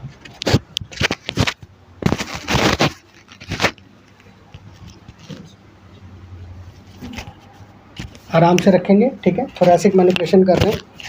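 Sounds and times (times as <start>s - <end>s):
clothing and table cover rustling: 0.0s - 11.0s.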